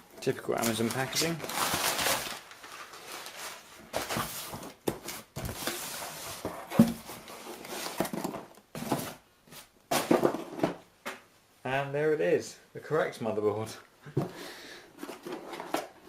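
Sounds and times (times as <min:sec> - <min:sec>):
packaging rustling and scraping: 0:00.6 - 0:10.8, 0:14.9 - 0:16.0.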